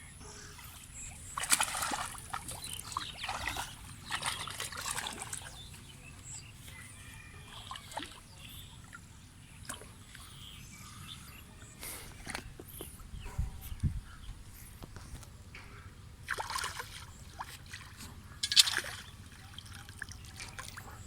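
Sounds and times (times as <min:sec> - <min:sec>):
water sloshing and splashing: 0:00.2 - 0:10.6, 0:15.0 - 0:21.0.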